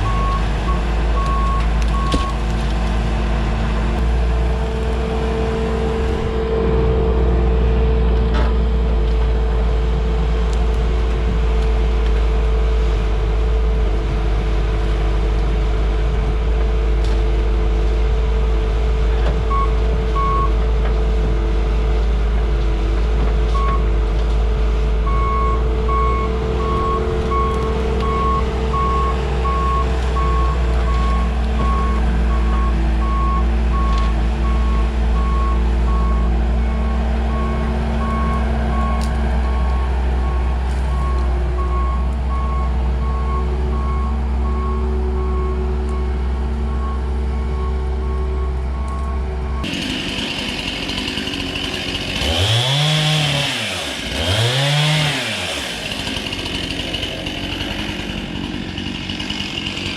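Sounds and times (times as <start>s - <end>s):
reversing alarm beeping: 0.0s - 2.4s, 25.1s - 49.7s
skid steer engine running: 0.0s - 59.9s
chainsaw revving: 49.6s - 59.9s.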